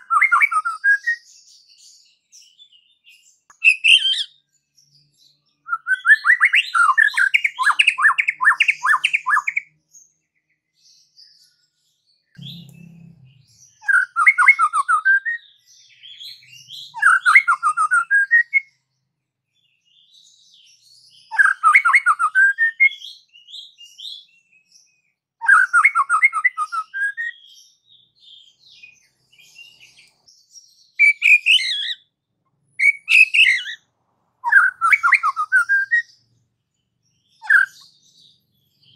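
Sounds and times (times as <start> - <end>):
bird singing rapid repeated notes: 0.0 - 38.9
faint high whistled notes: 12.4 - 15.3.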